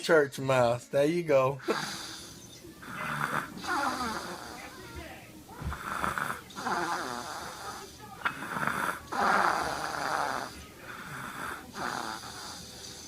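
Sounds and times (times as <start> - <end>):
child snoring: 1.6 - 4.9, 5.6 - 13.0.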